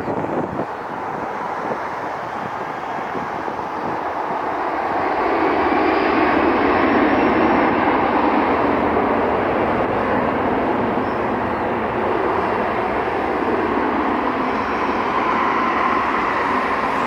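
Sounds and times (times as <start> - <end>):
jet engines rumbling: 0.0 - 17.0
faint high whine: 10.9 - 17.0.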